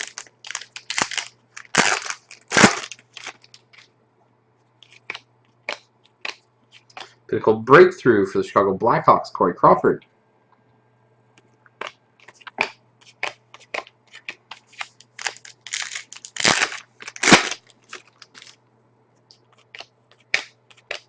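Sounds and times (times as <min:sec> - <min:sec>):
cards and foil wrappers crinkling: 0:00.0 - 0:03.9, 0:12.2 - 0:18.6.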